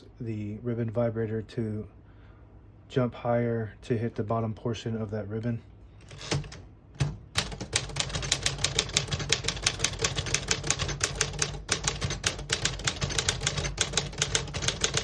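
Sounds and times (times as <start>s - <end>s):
manual typewriter typing: 6.0s - 15.0s.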